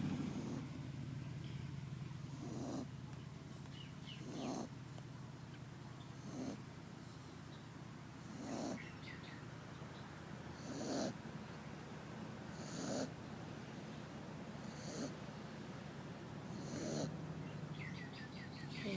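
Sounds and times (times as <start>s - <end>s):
pet snoring: 0.0s - 0.7s, 2.3s - 2.9s, 4.1s - 4.7s, 6.1s - 6.7s, 8.2s - 8.9s, 10.6s - 11.2s, 12.5s - 13.2s, 14.6s - 15.2s, 16.5s - 17.1s.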